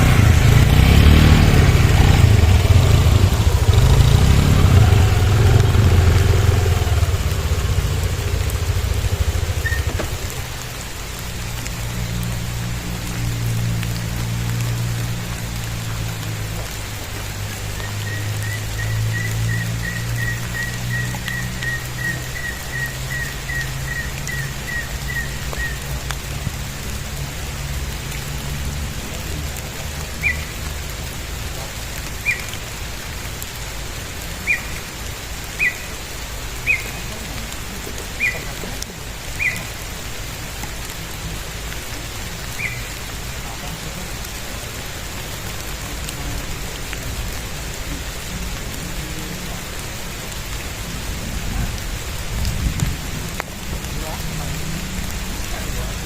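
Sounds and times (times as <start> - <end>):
low rumble: 0.0 - 17.0
steady rain falling: 0.0 - 56.0
high chirps: 5.0 - 10.2.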